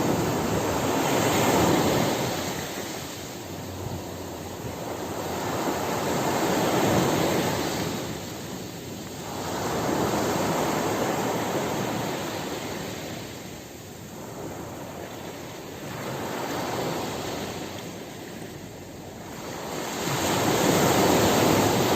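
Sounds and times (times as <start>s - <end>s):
sea waves washing onto shore: 0.0s - 21.9s.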